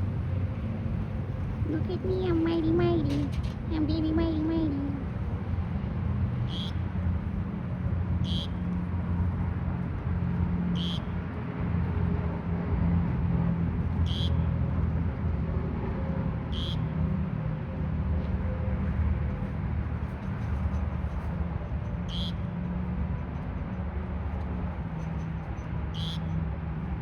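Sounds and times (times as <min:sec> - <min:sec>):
low rumble of road traffic: 0:00.0 - 0:27.0
raspy bird begging calls: 0:06.5 - 0:06.8, 0:08.2 - 0:08.6, 0:10.8 - 0:11.1, 0:14.1 - 0:14.4, 0:22.1 - 0:22.5, 0:25.9 - 0:26.3.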